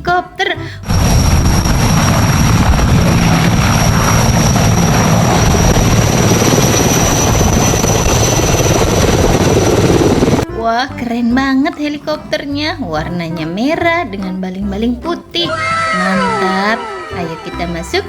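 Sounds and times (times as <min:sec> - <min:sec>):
helicopter rotor noise: 0:00.9 - 0:10.4
high turbine whine: 0:00.9 - 0:10.4.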